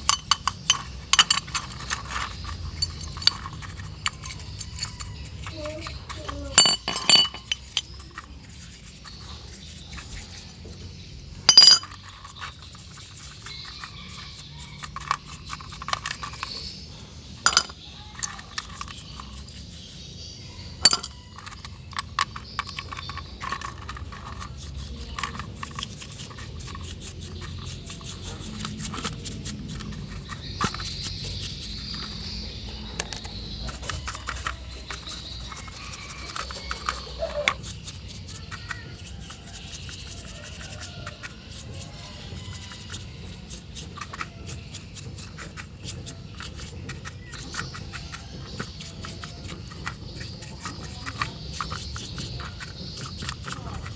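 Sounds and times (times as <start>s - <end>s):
sharp metallic clinks: 0.0s - 8.3s, 11.3s - 12.7s, 13.5s - 19.7s, 20.7s - 21.8s
small metal parts clicking: 0.0s - 20.1s, 20.7s - 53.9s.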